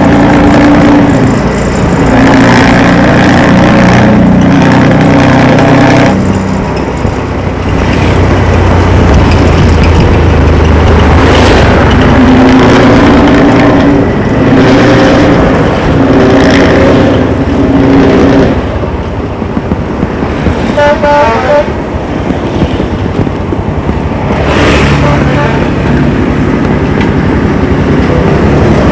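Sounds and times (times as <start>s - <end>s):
bus horn blasts: 20.6s - 21.8s.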